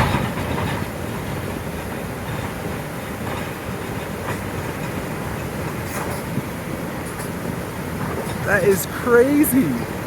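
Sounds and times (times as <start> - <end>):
floodwater rushing: 2.8 - 10.0.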